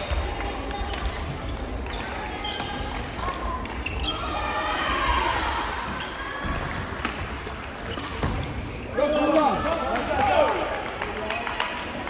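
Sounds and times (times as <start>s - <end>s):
shoes squeaking on court floor: 1.4s - 6.6s, 7.7s - 9.8s.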